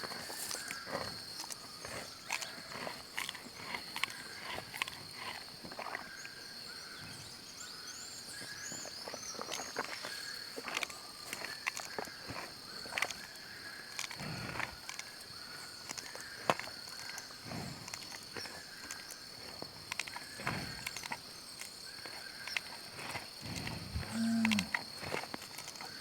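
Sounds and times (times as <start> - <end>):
cow chewing cud: 0.0 - 7.4, 8.8 - 26.0.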